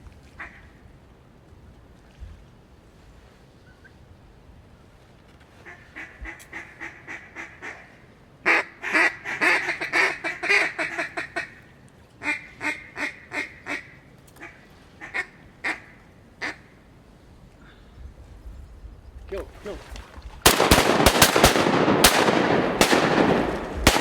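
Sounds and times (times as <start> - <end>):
duck call quacking: 8.5 - 11.6.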